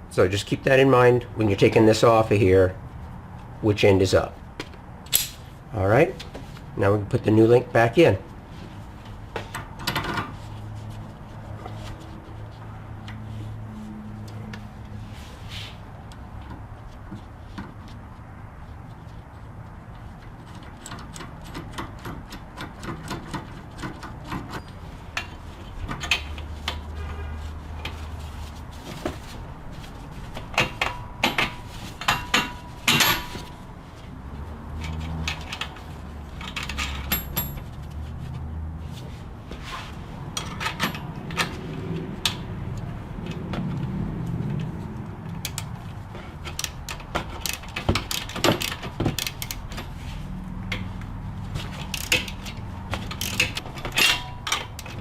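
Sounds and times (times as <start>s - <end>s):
tools and metal parts clinking: 5.1s - 5.5s, 30.5s - 33.5s, 34.8s - 37.8s, 40.4s - 41.6s, 46.3s - 49.9s, 51.6s - 55.0s.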